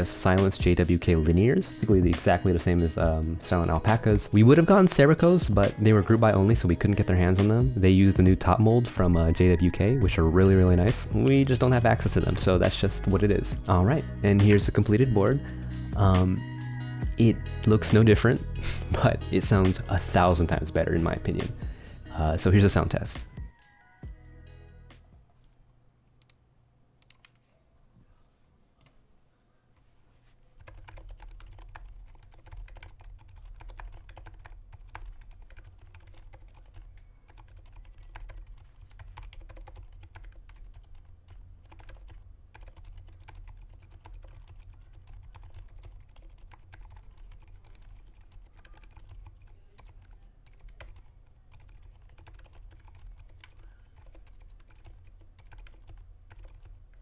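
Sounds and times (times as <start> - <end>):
muffled keyboard typing: 10.0 - 18.2, 27.0 - 27.5, 30.6 - 57.0.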